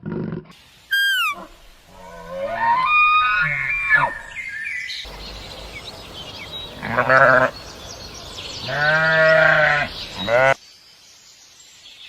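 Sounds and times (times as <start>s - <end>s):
outdoor background noise: 0.0s - 12.0s
farm animal bleating: 6.7s - 7.6s, 8.6s - 10.6s.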